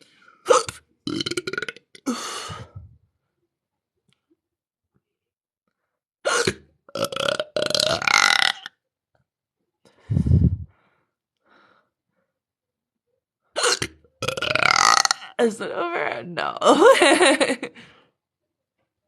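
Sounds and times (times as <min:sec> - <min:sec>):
woman belching: 0:06.3 - 0:08.7, 0:13.6 - 0:15.4.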